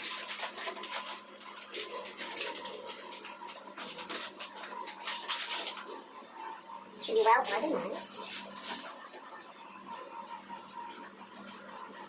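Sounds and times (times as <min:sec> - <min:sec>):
small objects rustling and clattering: 0:00.0 - 0:06.0.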